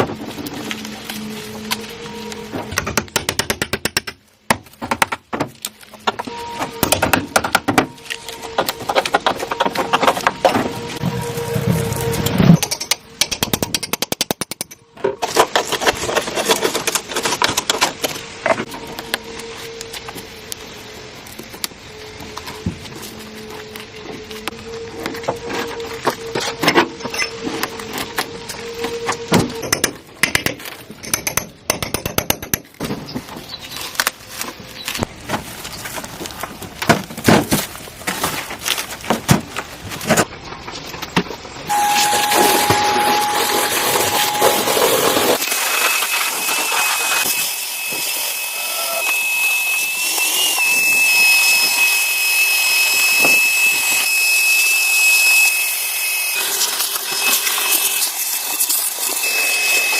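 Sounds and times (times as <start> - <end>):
power tool whining: 41.7 - 59.9.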